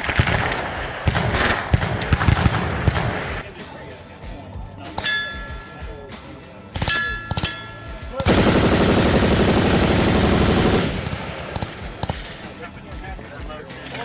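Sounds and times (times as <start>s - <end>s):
full-auto gunfire burst: 0.0s - 3.4s, 8.2s - 12.4s
bullets ringing steel targets: 4.9s - 14.0s.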